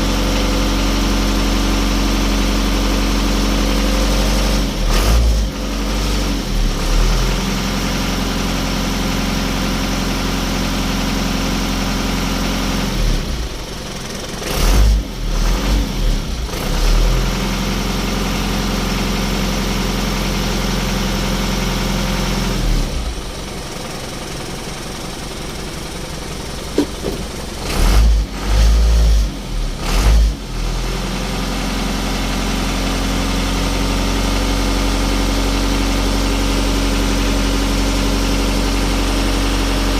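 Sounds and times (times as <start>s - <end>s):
truck engine idling: 22.9s - 28.6s
loud low thumps: 26.7s - 27.4s.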